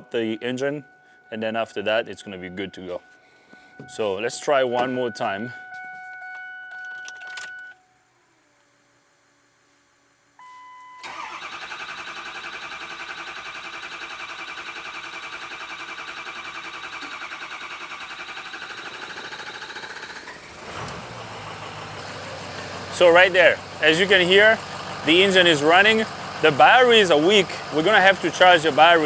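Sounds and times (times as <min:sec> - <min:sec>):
diesel engine cranking: 0:11.0 - 0:29.0
engine starting and running: 0:11.0 - 0:29.0.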